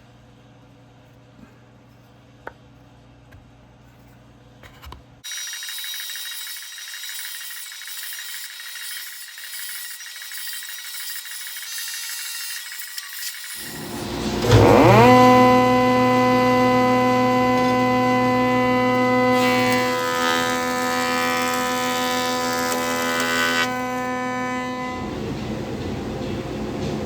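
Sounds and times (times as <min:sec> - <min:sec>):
tool rasping wood: 0:05.3 - 0:24.9.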